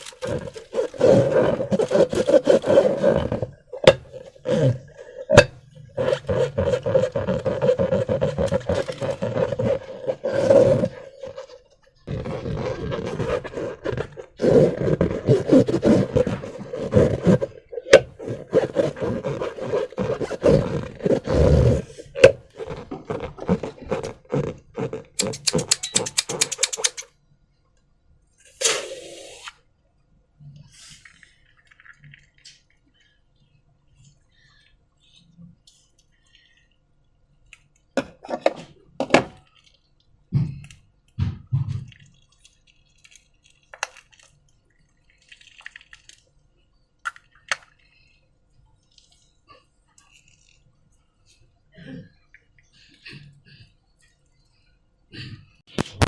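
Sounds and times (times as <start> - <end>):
slime squelching: 0.0 - 27.0, 41.7 - 46.4
rubbery squeaking and crackling: 0.0 - 27.1
quick clicks: 25.2 - 27.1.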